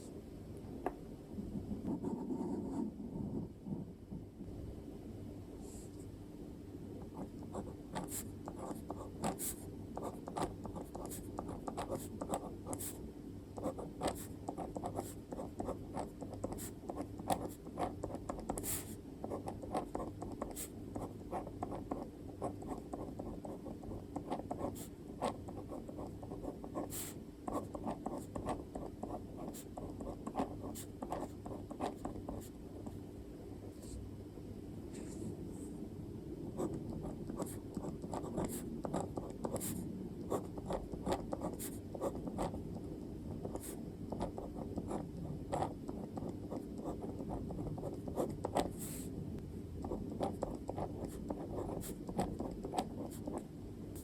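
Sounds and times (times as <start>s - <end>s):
pen scratching on paper: 1.8s - 3.0s, 7.0s - 13.0s, 13.6s - 33.0s, 36.6s - 49.1s, 49.8s - 53.4s.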